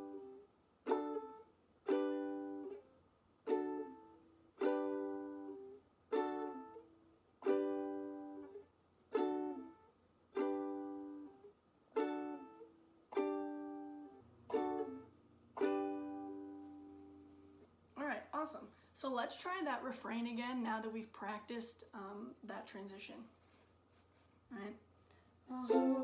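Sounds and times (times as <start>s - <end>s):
ukulele chord strums: 0.0s - 17.7s, 25.5s - 26.0s.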